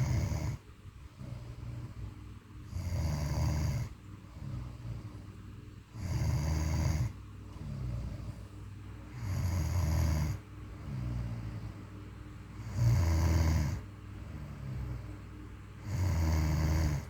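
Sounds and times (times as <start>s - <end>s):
loud low snores: 0.0s - 2.0s, 2.7s - 5.2s, 5.9s - 8.4s, 9.1s - 11.7s, 12.6s - 15.1s, 15.8s - 17.0s
soft snoring breaths: 0.0s - 17.0s.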